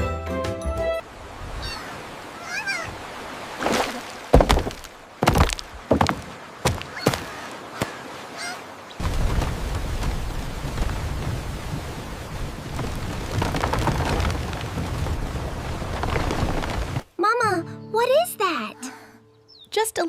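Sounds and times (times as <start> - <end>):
honking bird-like calls: 1.6 - 3.0.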